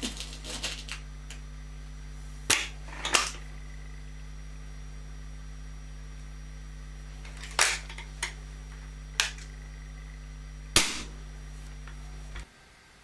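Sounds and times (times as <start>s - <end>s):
steady low hum: 0.0s - 13.0s
air rifle shots cracking: 10.8s - 11.3s.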